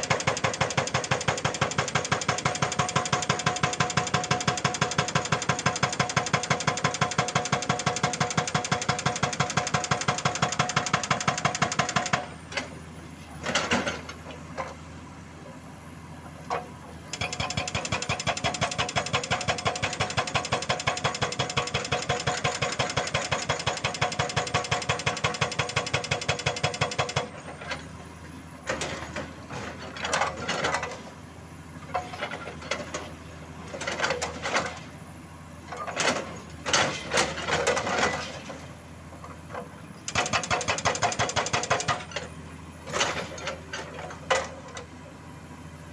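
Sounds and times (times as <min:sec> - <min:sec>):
hydraulic rock breaker hammering: 0:00.0 - 0:12.6, 0:16.5 - 0:27.8, 0:39.5 - 0:42.3
excavator engine running: 0:00.0 - 0:45.9.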